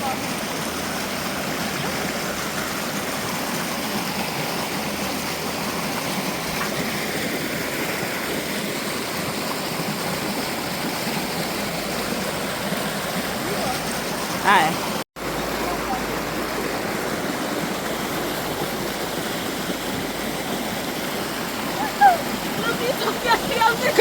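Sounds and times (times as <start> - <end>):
stream running over rocks: 0.0 - 24.0.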